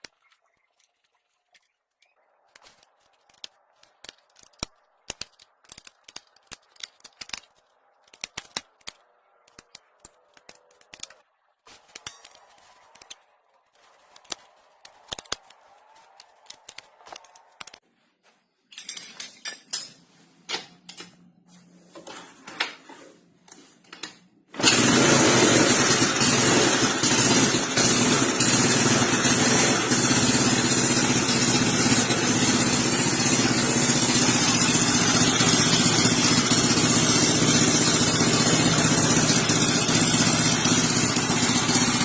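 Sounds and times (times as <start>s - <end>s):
scooter engine starting and running: 2.1s - 17.8s, 21.8s - 42.0s
tools and metal parts clicking: 2.5s - 13.2s, 18.7s - 21.2s.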